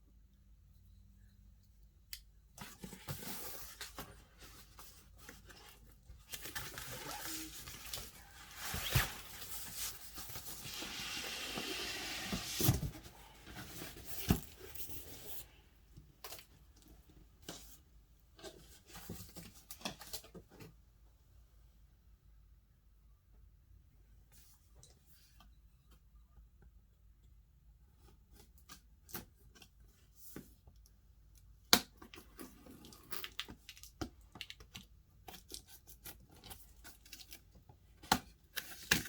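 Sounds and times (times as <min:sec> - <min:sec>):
packaging tearing and rustling: 0:06.2 - 0:12.8.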